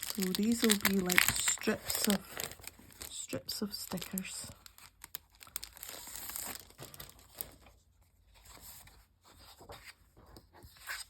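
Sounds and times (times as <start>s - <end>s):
packaging crinkling and rustling: 0.0s - 7.8s.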